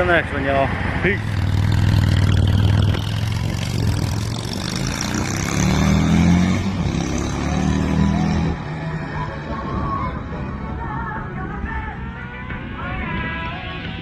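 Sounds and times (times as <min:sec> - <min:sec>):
motorcycle engine running: 0:01.0 - 0:08.9.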